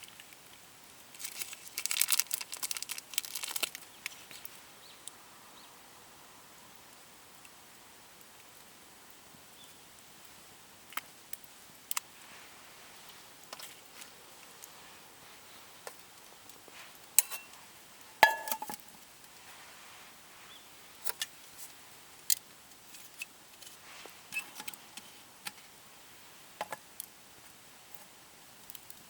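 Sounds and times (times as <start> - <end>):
ringing metal clink: 17.2 - 17.6, 18.2 - 18.7
cookware clicks and taps: 18.2 - 18.8.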